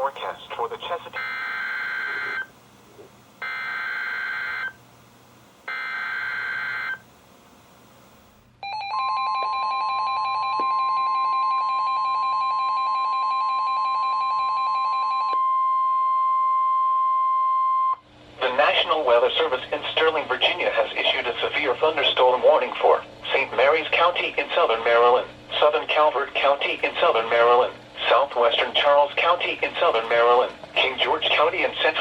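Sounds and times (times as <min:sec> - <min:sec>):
steady warning alarm tone: 0:00.6 - 0:02.5, 0:03.4 - 0:04.8, 0:05.7 - 0:07.1, 0:08.6 - 0:18.0.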